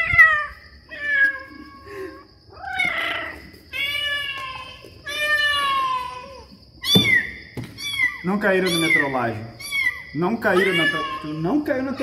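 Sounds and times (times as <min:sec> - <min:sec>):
recorded cat meows: 0:09.6 - 0:11.4.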